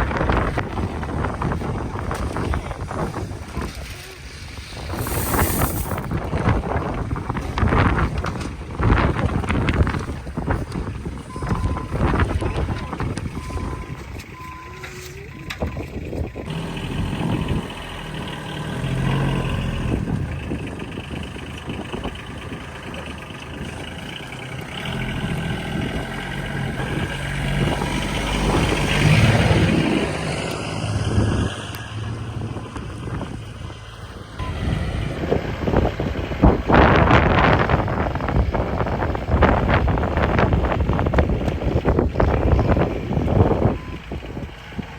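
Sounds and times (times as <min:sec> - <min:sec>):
farm machine engine running: 0:00.0 - 0:44.9
short beeps: 0:34.4 - 0:34.8.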